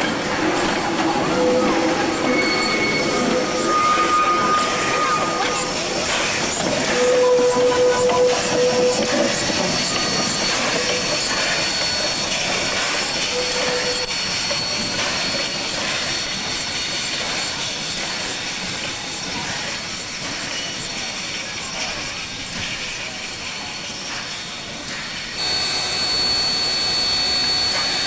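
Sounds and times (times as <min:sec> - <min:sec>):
train running with hiss: 0:00.0 - 0:28.0
high-pitched whine: 0:25.4 - 0:28.0.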